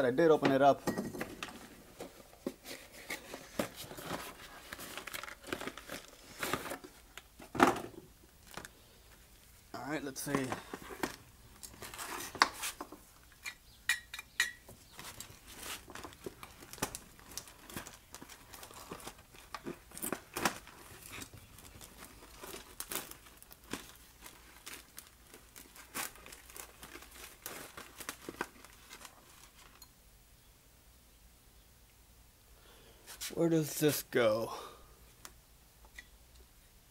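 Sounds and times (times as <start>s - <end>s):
crinkling: 0.6s - 13.6s, 14.7s - 29.9s.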